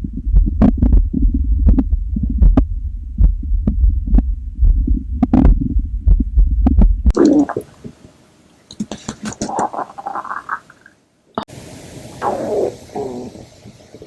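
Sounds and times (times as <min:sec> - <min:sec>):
stomach growling: 0:06.8 - 0:07.9, 0:08.9 - 0:11.0, 0:12.2 - 0:14.0
faint hiss: 0:07.2 - 0:14.0.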